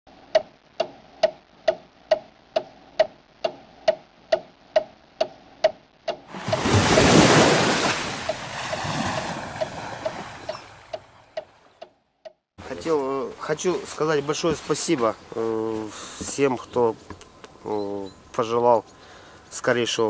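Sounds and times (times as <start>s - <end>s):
sharp even ticking: 0.2s - 6.7s.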